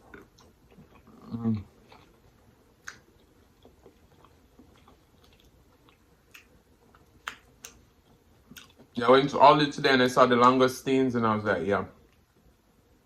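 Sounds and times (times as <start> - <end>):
chewing: 0.0 - 9.0
wet mouth clicks: 2.8 - 3.1, 5.2 - 7.8.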